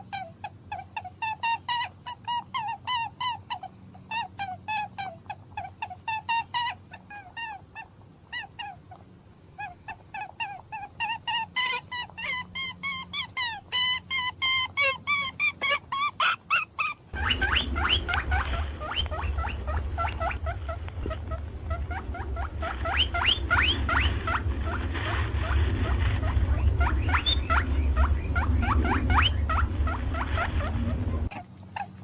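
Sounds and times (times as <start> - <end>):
small animals squeaking: 0.0 - 9.0, 9.6 - 32.0
steady low hum: 17.0 - 32.0.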